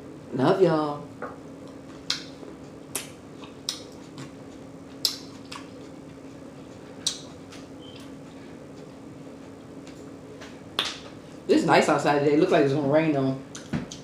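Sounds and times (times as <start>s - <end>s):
mouth smacking while chewing: 1.6s - 8.1s.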